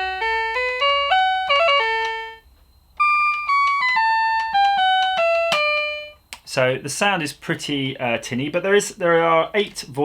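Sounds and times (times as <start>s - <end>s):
tinny keyboard notes: 0.0s - 6.2s.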